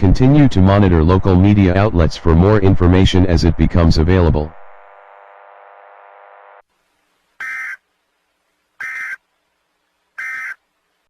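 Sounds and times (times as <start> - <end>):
emergency alert data bursts: 7.4 - 7.8, 8.8 - 9.2, 10.2 - 10.6.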